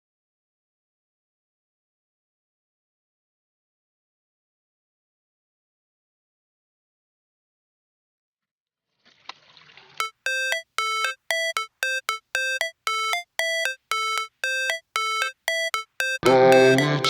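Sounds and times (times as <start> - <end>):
synthesized chime-like beep pattern: 10.0 - 17.0.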